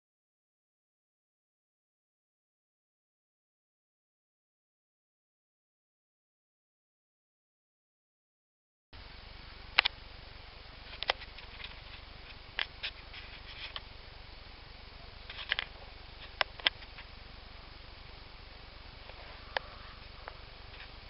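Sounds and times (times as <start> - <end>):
steady low hum: 9.0 - 21.0.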